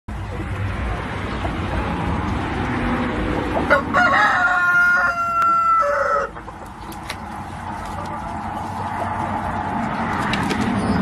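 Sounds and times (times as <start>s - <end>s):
rooster crowing: 3.6s - 6.5s.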